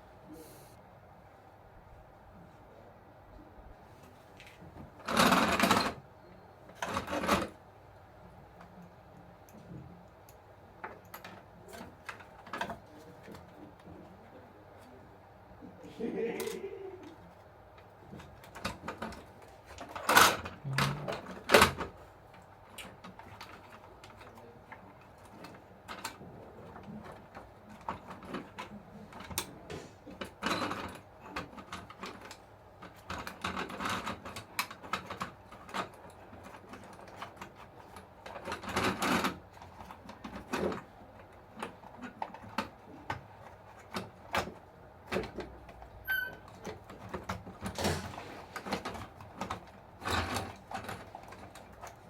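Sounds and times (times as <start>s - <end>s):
clicks and knocks of small parts: 16.4s - 52.0s.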